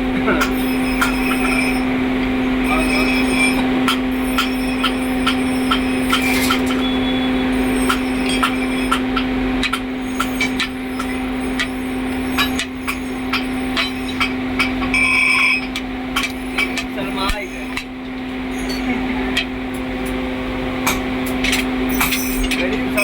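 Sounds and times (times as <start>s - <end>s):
steady machine hum: 0.0s - 23.0s
hammer striking metal: 0.3s - 20.2s, 20.8s - 23.0s.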